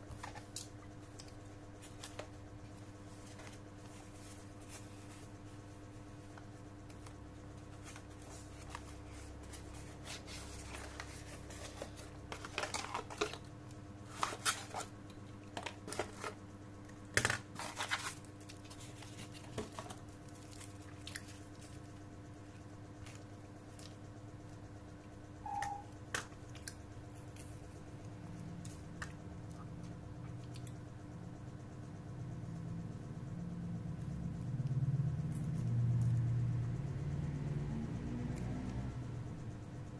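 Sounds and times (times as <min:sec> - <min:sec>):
steady low hum: 0:00.0 - 0:39.9
short tone: 0:25.4 - 0:25.9.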